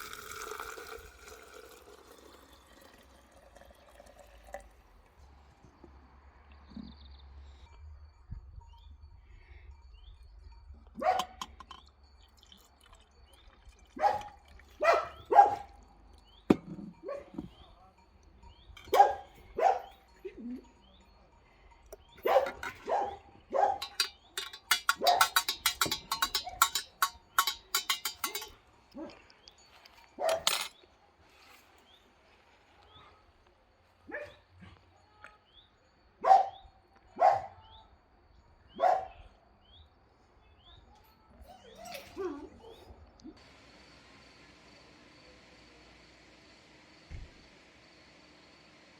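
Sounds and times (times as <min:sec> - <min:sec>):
dog barking: 0:11.0 - 0:11.4, 0:14.0 - 0:15.8, 0:17.0 - 0:17.4, 0:18.9 - 0:20.0, 0:22.2 - 0:23.8, 0:30.2 - 0:30.5, 0:34.1 - 0:34.8, 0:36.2 - 0:37.7, 0:38.7 - 0:39.3
rapid rattling clatter: 0:22.3 - 0:28.6.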